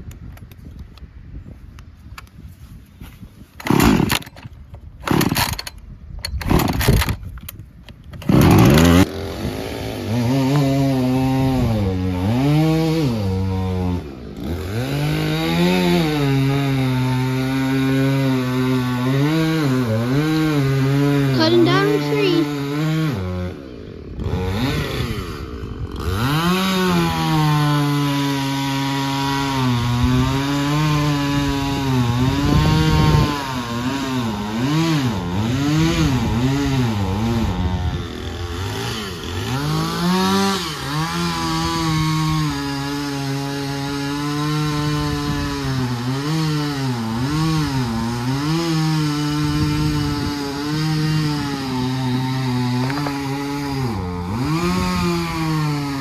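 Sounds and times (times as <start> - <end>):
chainsaw cutting wood: 3.6 - 56.0.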